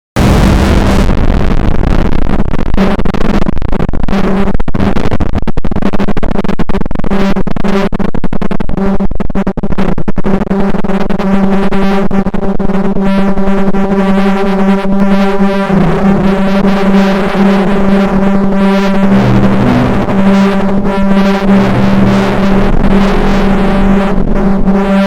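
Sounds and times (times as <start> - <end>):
loud electronic music: 15.0 - 25.0.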